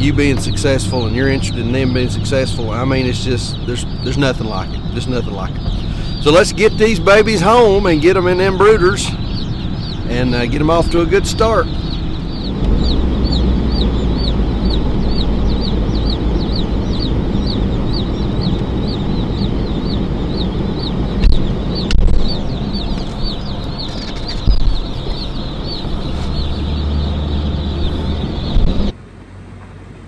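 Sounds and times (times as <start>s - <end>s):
baby chicks peeping: 0.0s - 28.9s
vehicle rumble: 0.0s - 30.0s.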